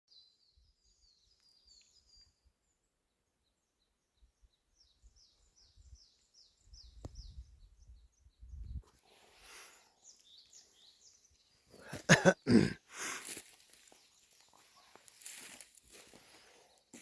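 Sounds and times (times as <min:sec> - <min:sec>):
faint bird chirps: 0:00.1 - 0:12.0, 0:13.6 - 0:17.0.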